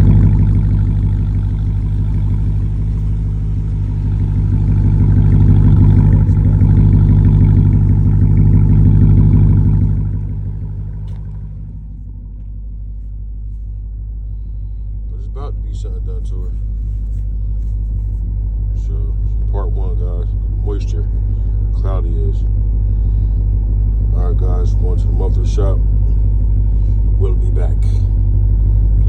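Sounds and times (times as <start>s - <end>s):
vee eight engine rumbling: 0.0s - 29.0s.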